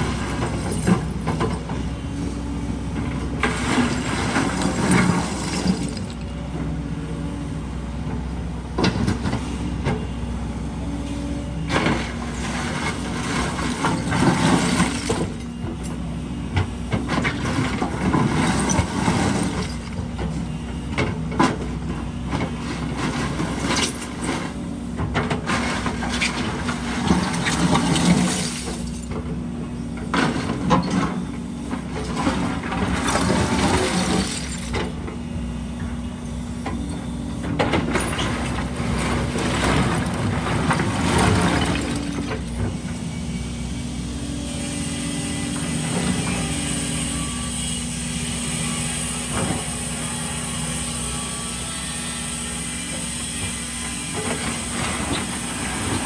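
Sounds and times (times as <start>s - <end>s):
diesel excavator engine running: 0.0s - 56.0s
concrete rubble scraping and clattering: 3.3s - 6.3s, 11.8s - 15.4s, 22.4s - 24.5s, 25.1s - 29.2s, 31.8s - 35.0s, 37.5s - 42.8s.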